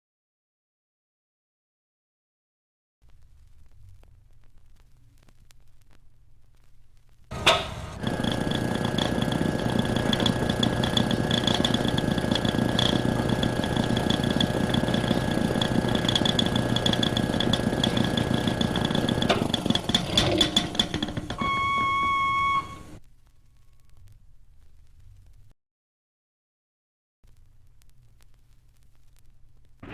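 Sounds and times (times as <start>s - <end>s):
machine-like drone with high whine: 7.3s - 23.0s.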